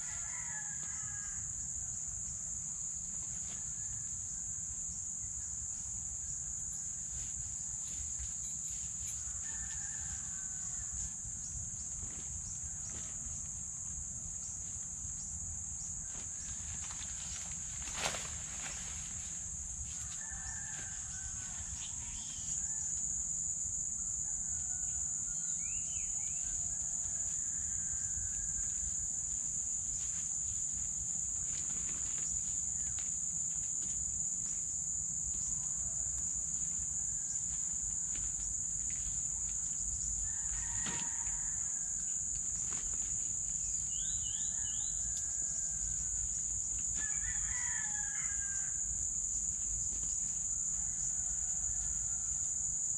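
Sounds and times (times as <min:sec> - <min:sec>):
roosters crowing: 0:00.0 - 0:02.0, 0:08.8 - 0:13.5, 0:16.0 - 0:29.7, 0:35.6 - 0:42.9, 0:43.6 - 0:49.5, 0:50.5 - 0:52.9
high-pitched insect drone: 0:14.4 - 0:52.9.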